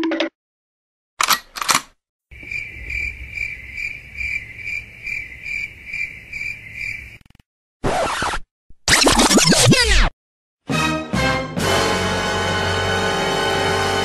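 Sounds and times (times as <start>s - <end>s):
crickets chirping: 2.3s - 7.3s.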